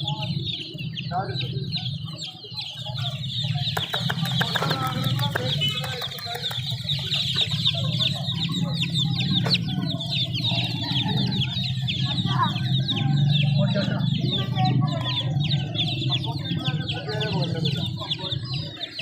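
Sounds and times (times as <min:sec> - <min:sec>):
baby chicks peeping: 0:00.0 - 0:19.0
sharp clicks: 0:03.7 - 0:07.5.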